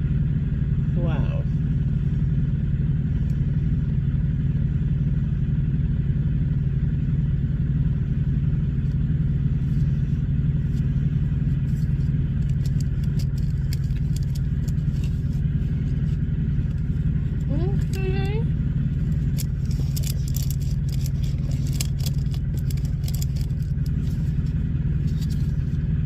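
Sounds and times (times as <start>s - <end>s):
vehicle engine idling: 0.0s - 26.0s
packaging crinkling: 19.1s - 25.6s.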